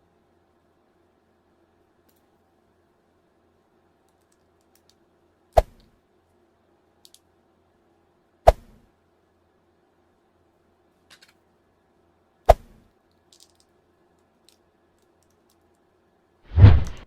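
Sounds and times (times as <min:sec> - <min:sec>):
faint clicks of plastic parts: 0:02.0 - 0:02.5, 0:04.0 - 0:06.4, 0:07.0 - 0:07.4, 0:10.9 - 0:11.5, 0:12.8 - 0:16.0.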